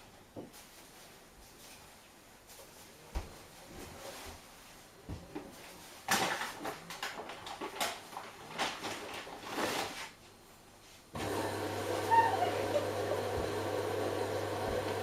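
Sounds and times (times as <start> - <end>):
washing machine humming: 11.1 - 15.0.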